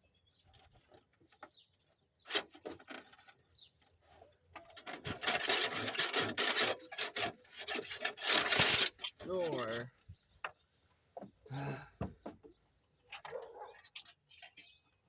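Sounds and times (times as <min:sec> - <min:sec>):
scraping and rubbing: 0:00.4 - 0:09.9, 0:13.1 - 0:14.8.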